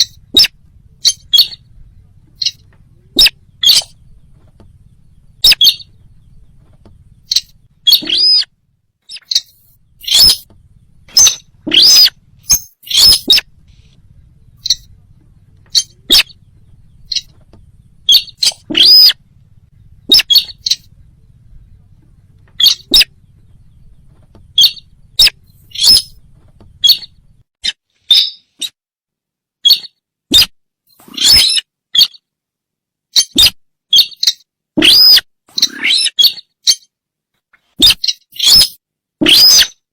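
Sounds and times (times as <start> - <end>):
loud bird call chirps: 0.0 - 15.0, 15.6 - 19.3, 20.0 - 21.0, 22.5 - 28.8, 29.6 - 30.5, 31.2 - 32.2, 33.2 - 36.9, 37.8 - 39.8.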